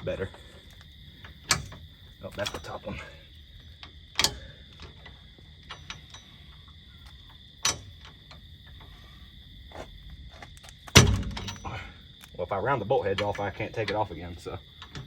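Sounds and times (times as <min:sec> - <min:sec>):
crickets trilling: 0:00.0 - 0:15.0
wrench metallic clicks: 0:01.5 - 0:02.7.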